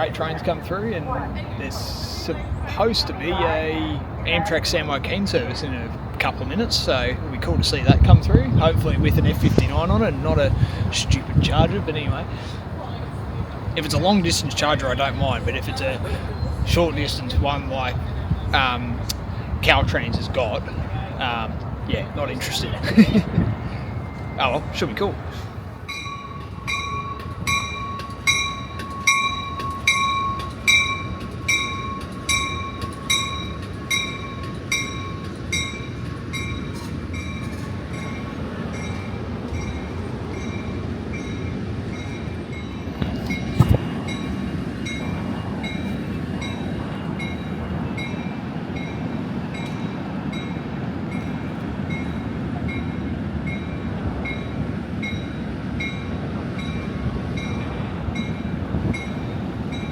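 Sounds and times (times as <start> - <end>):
train rumbling: 0.0 - 59.9
bell ringing: 25.9 - 51.3.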